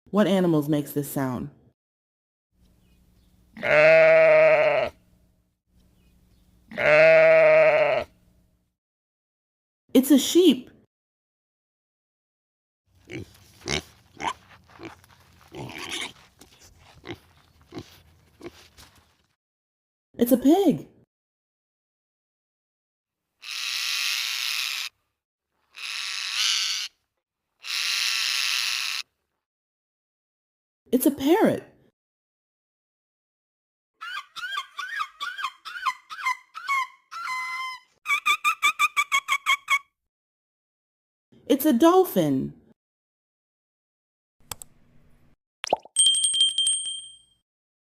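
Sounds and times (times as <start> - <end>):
sheep bleating: 3.6 - 5.0, 6.7 - 8.1
parrot squawking: 25.8 - 26.9, 27.6 - 29.0, 34.0 - 39.8.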